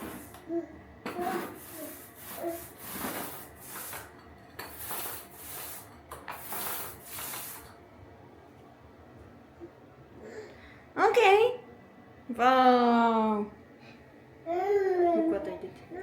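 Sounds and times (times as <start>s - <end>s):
hand tool rubbing a surface: 0.0s - 0.4s, 1.2s - 7.7s.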